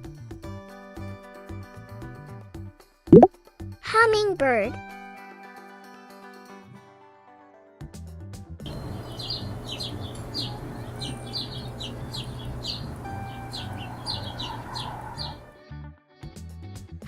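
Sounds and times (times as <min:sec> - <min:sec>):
hummingbird chirping: 0:08.7 - 0:15.5
steady low hum: 0:08.7 - 0:15.5.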